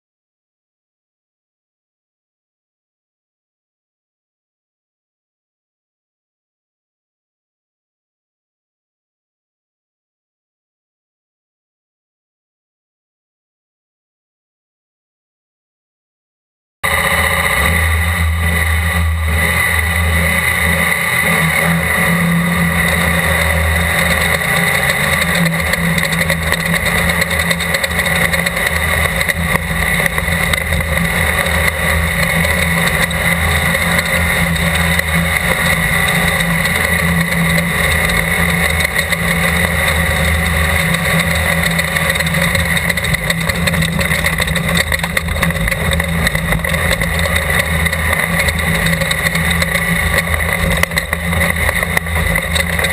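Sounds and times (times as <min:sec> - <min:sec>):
race car engine running hard: 0:16.8 - 0:52.9.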